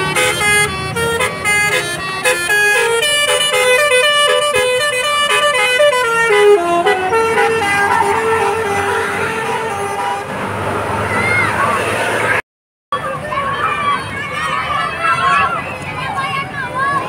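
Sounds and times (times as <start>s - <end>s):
musical bus horn: 0.0s - 10.4s
low rumble of traffic: 0.0s - 12.4s, 13.0s - 17.0s.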